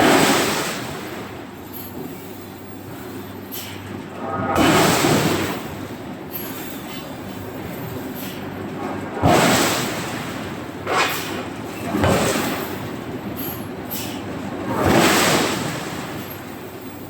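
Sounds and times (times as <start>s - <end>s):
steady machine background: 0.0s - 17.0s
loud clanking rushing bursts: 4.1s - 7.6s.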